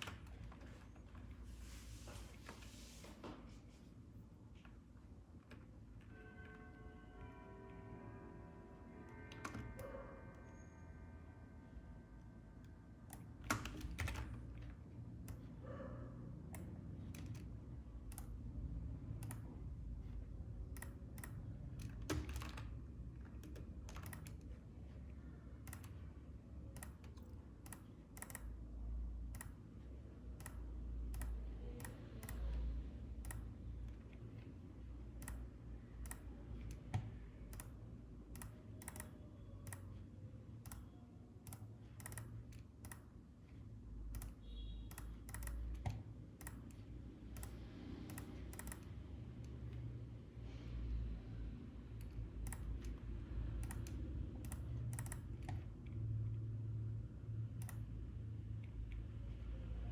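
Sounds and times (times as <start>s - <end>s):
low steady hum: 0.0s - 59.9s
keyboard and mouse clicks: 9.1s - 10.0s, 12.6s - 15.6s, 16.4s - 24.7s, 25.6s - 26.0s, 26.6s - 28.6s, 29.2s - 29.6s, 30.3s - 39.9s, 40.6s - 43.2s, 44.1s - 49.9s, 52.0s - 56.1s, 57.6s - 57.9s.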